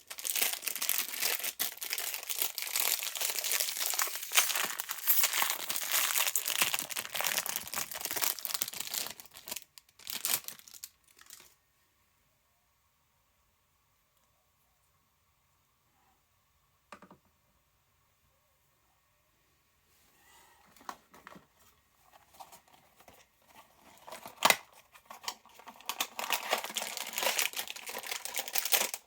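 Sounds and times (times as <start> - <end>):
packaging tearing: 0.0 - 11.5, 24.1 - 29.0
packaging crinkling and crumpling: 0.0 - 11.6, 22.1 - 29.0.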